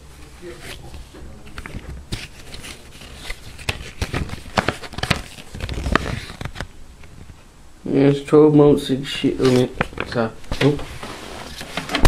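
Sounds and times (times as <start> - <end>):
paper rustling and crackling: 0.4 - 6.7, 9.3 - 12.0.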